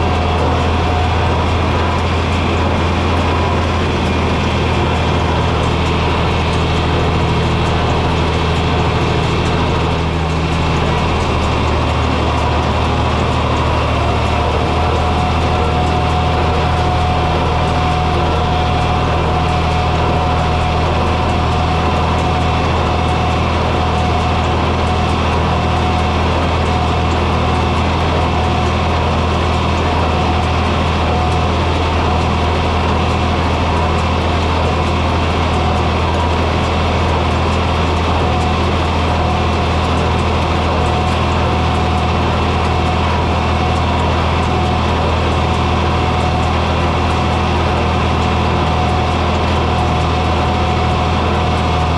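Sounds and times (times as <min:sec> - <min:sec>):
thin steady whine: 0:00.0 - 0:51.9
tractor engine running: 0:00.0 - 0:51.9.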